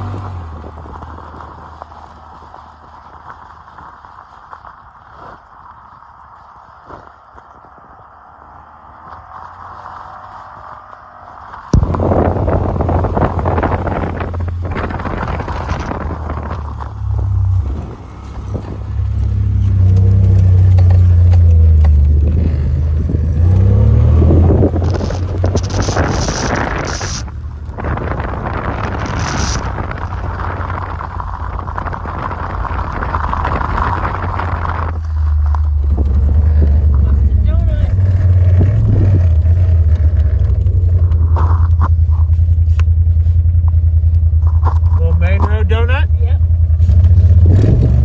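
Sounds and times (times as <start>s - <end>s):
engine pulling under throttle: 0.0s - 48.0s
short scraping sounds: 22.3s - 31.1s.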